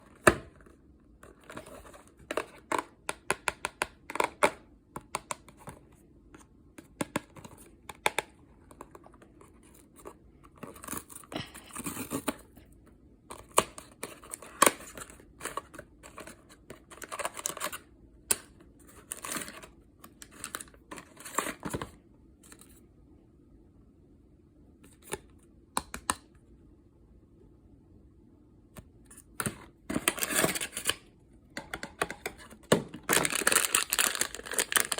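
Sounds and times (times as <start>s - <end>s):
packaging tearing and crinkling: 30.0s - 31.0s, 33.0s - 34.9s.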